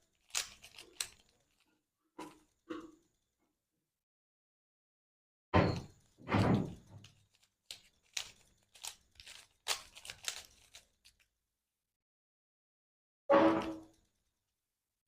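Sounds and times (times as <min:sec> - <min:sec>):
plastic puzzle cube clacking: 0:00.1 - 0:01.7, 0:07.0 - 0:11.3
quick clicks of twisting layers: 0:00.1 - 0:01.7, 0:07.0 - 0:11.3.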